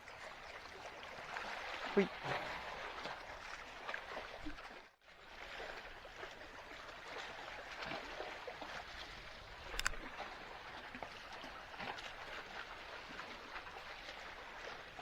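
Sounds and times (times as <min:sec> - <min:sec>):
sea water lapping on rocks: 0:00.1 - 0:15.0
short sharp click: 0:09.7 - 0:10.0.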